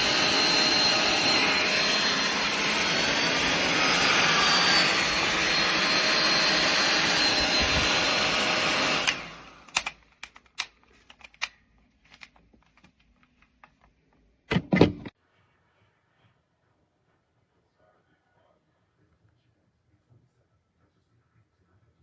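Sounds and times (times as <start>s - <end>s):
hair dryer blowing: 0.0s - 9.9s
handling clicks and knocks: 9.7s - 15.1s.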